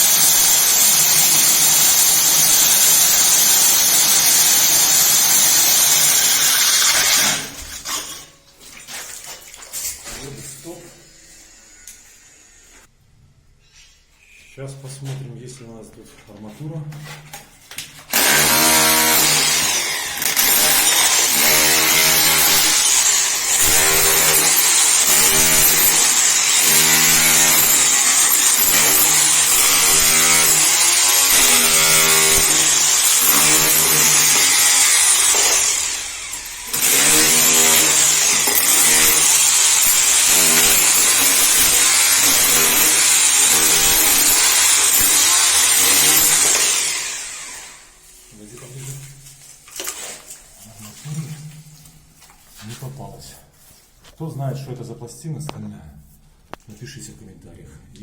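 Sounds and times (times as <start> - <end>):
core drill grinding concrete: 0.0 - 8.3, 18.1 - 48.0.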